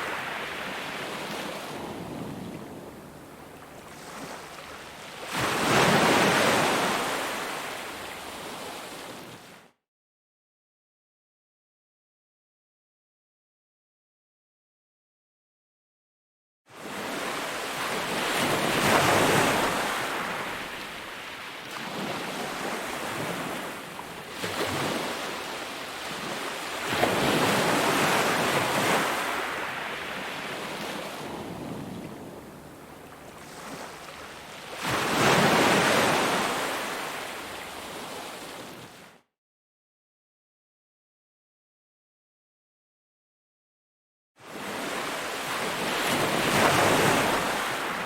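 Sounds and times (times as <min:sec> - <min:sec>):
ocean waves breaking: 0:00.0 - 0:09.5, 0:16.8 - 0:39.0, 0:44.4 - 0:48.0.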